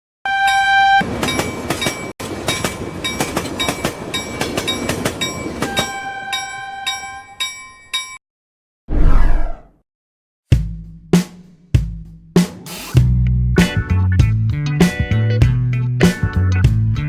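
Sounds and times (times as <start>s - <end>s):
train horn: 0.2s - 1.1s, 5.6s - 7.2s
train wheels clacking: 1.0s - 8.1s
ringing clink: 6.3s - 8.2s.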